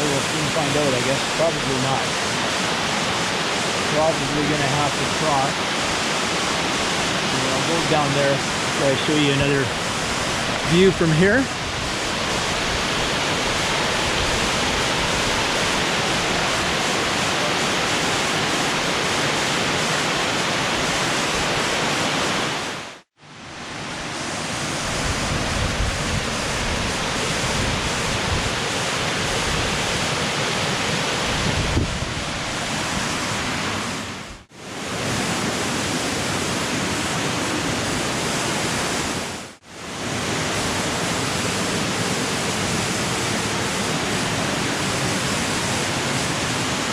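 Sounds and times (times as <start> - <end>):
waterfall rushing: 0.0 - 46.9
wind rumble on microphone: 24.7 - 30.0, 31.2 - 33.5.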